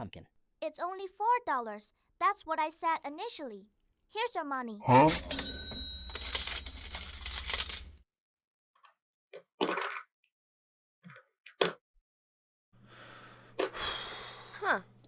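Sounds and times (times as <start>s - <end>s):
coins clinking and jingling: 4.9s - 8.0s.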